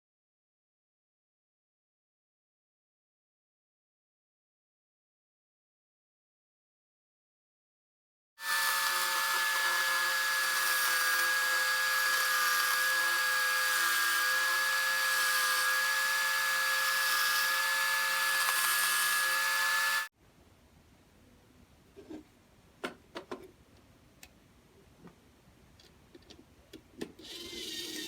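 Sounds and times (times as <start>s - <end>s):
power tool motor whine: 8.4s - 20.1s.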